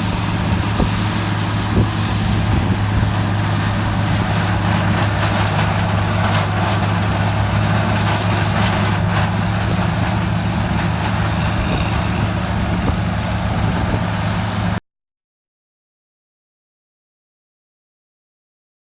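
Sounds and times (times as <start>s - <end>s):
large diesel engine running: 0.0s - 14.8s.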